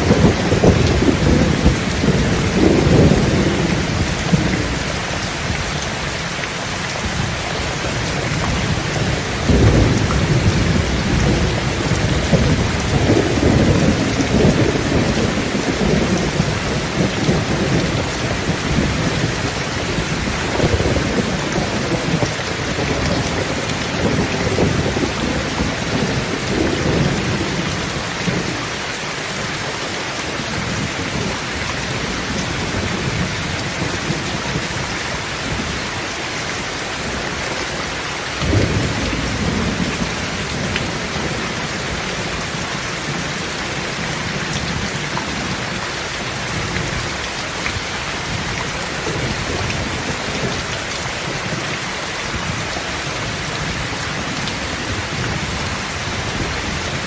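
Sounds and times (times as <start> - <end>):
thunder clap: 0.0 - 5.0, 8.4 - 27.7
rolling thunder: 0.0 - 5.5, 7.0 - 28.6, 38.4 - 47.1
heavy rain falling: 0.0 - 57.0.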